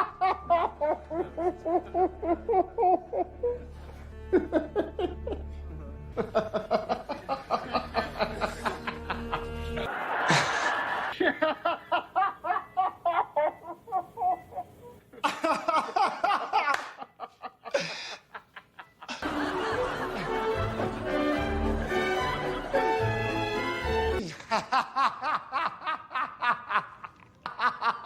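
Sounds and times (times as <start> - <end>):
background music: 0.0 - 11.2, 18.9 - 25.4.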